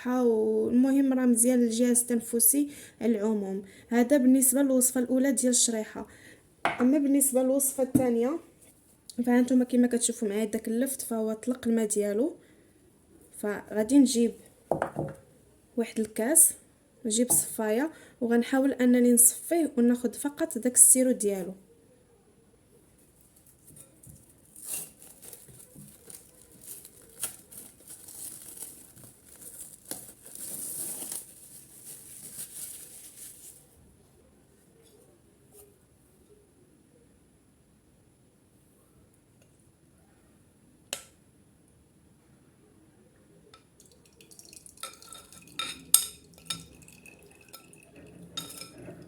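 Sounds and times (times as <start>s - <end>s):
crinkling rustles: 23.0s - 34.0s
liquid pouring into glass: 43.8s - 49.0s
strainer clinking against glass: 44.4s - 49.0s.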